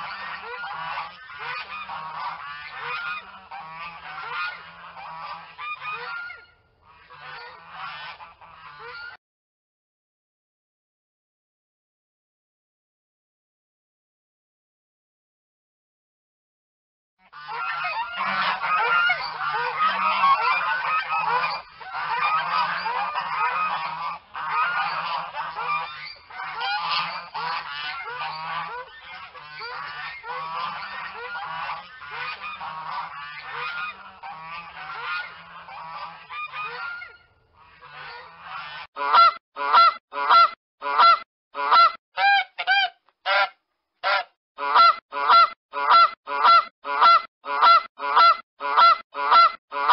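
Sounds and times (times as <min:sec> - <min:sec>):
geese honking: 0:00.0 - 0:09.2, 0:17.2 - 0:49.9.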